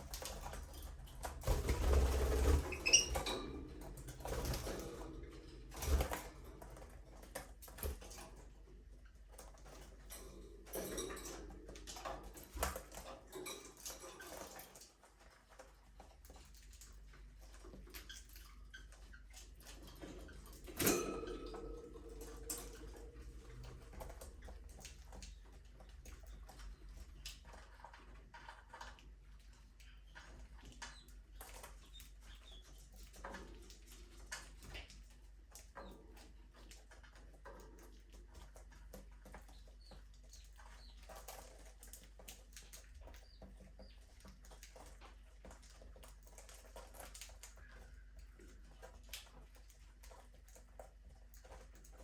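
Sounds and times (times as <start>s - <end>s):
pecking and scratching clicks: 21.2s - 52.0s.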